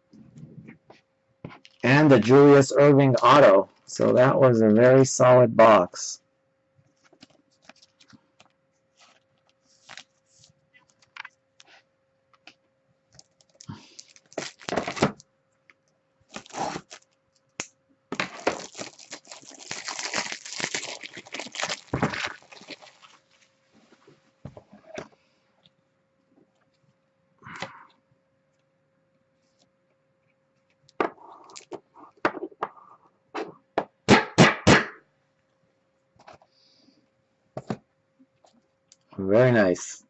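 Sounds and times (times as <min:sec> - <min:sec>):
faint steady hum: 0:00.0 - 0:40.0
plastic packaging crinkling and tearing: 0:09.8 - 0:10.2, 0:13.2 - 0:15.2, 0:16.3 - 0:17.2, 0:18.1 - 0:23.6.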